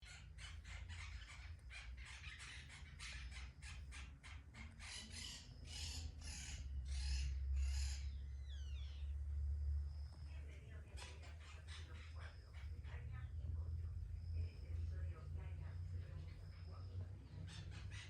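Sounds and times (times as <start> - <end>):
bird chirp: 0.0 - 18.0
low rumble: 6.7 - 17.4.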